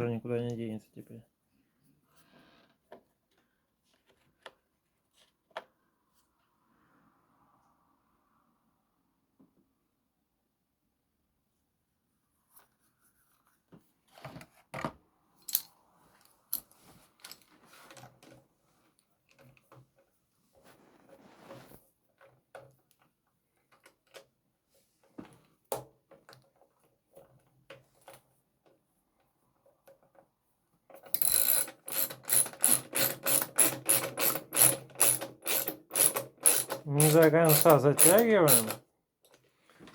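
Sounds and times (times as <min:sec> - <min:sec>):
parts and tools clicking: 0:15.4 - 0:15.7, 0:31.0 - 0:39.4
ratchet wrench clicking: 0:31.2 - 0:38.8.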